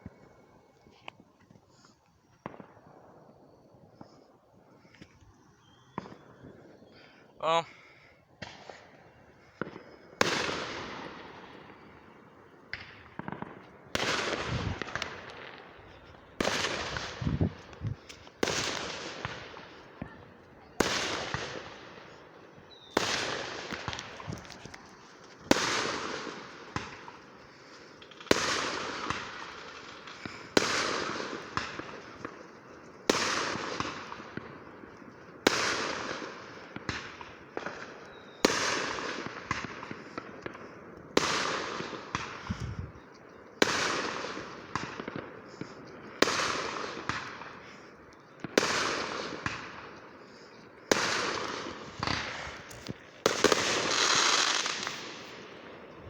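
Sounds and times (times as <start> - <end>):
fireworks crackling and pops: 0.0 - 56.0
fireworks bangs: 5.8 - 7.7, 8.4 - 56.0.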